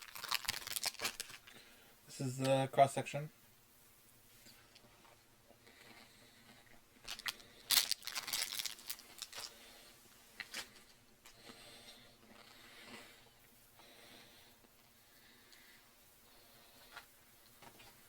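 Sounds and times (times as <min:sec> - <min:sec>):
chocolate bar crunching: 0:00.0 - 0:01.6, 0:07.0 - 0:09.6.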